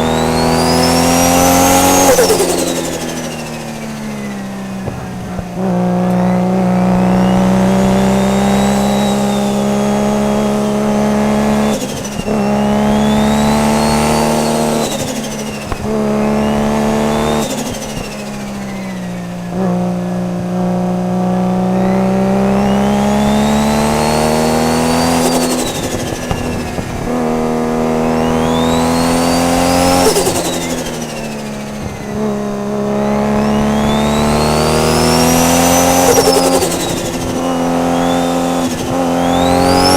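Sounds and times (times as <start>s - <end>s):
turbo whistle: 0.0s - 4.0s, 6.2s - 9.7s, 28.0s - 31.5s, 33.4s - 39.9s
gear change bursts: 0.0s - 10.6s, 22.5s - 39.9s
car engine accelerating: 0.0s - 39.9s.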